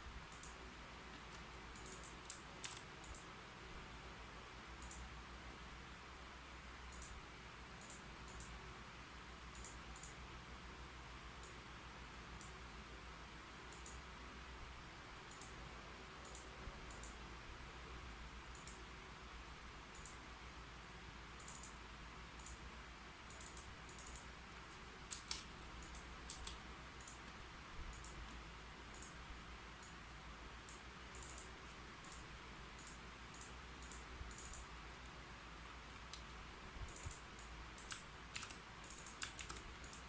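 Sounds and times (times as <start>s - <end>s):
low room hum: 0.0s - 40.0s
keyboard keys clicking: 0.3s - 3.3s, 25.1s - 27.3s, 36.9s - 40.0s.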